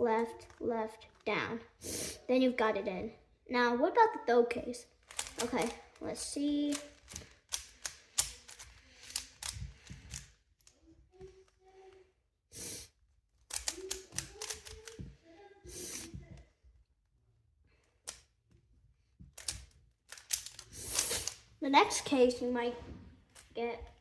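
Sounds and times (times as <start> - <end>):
puzzle cube clicking: 5.0 - 6.0, 6.6 - 10.8, 13.4 - 15.1, 18.0 - 18.3, 19.3 - 21.4.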